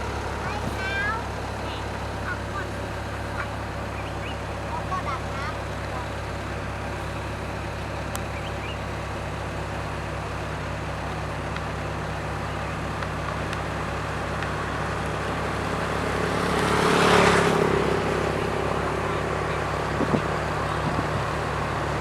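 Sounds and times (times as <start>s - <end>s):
diesel engine running: 0.0s - 22.0s
vehicle passing: 12.3s - 22.0s.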